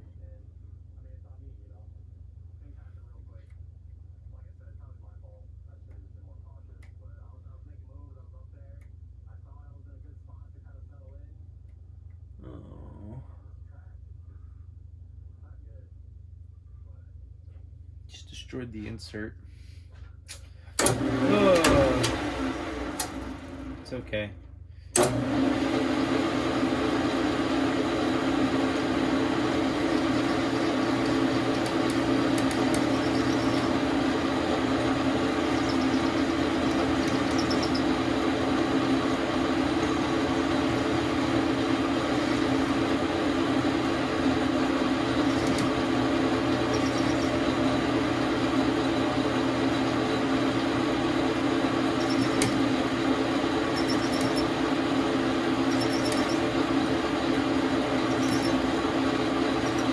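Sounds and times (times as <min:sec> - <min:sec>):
lathe humming: 0:20.8 - 0:24.1, 0:25.0 - 0:59.9.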